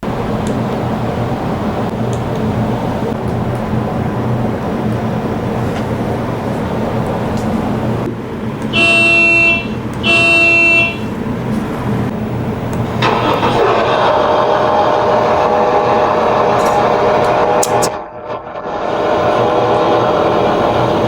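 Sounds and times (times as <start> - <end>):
machine whirring: 0.0 - 21.0
horn beeps: 8.7 - 11.2.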